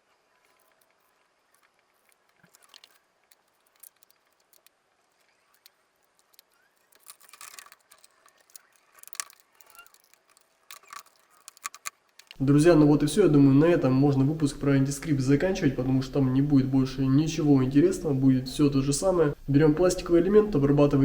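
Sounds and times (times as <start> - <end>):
material rustling: 0.0 - 12.4.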